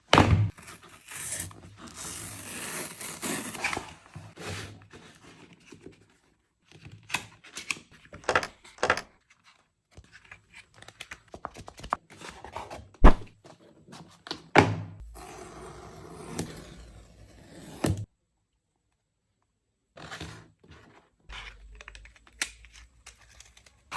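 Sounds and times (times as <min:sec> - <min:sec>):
cardboard sliding and scraping: 0:12.6 - 0:13.3, 0:15.2 - 0:18.1.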